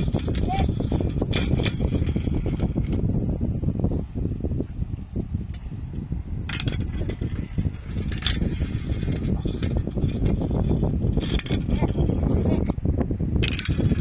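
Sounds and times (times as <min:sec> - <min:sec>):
marbles rolling on track: 0:00.0 - 0:03.1, 0:06.5 - 0:12.8, 0:13.4 - 0:14.0.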